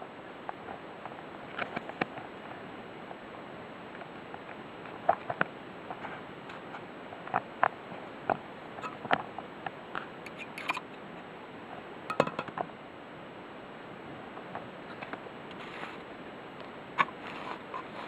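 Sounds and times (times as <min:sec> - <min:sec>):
small object clicking and tapping: 0:12.1 - 0:12.6.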